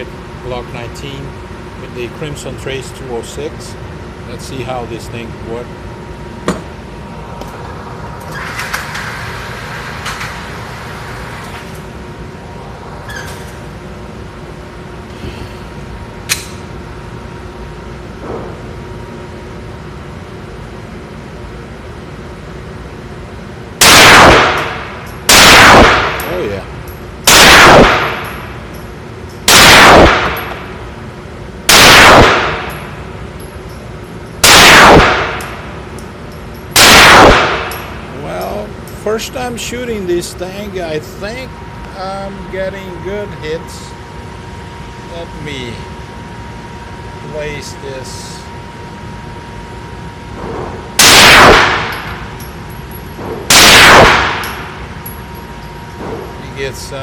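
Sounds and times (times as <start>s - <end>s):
pistol shots: 23.8s - 26.3s, 27.2s - 28.4s, 29.5s - 30.7s, 31.7s - 32.8s, 34.4s - 35.6s, 36.8s - 37.9s, 51.0s - 52.2s, 53.2s - 54.6s.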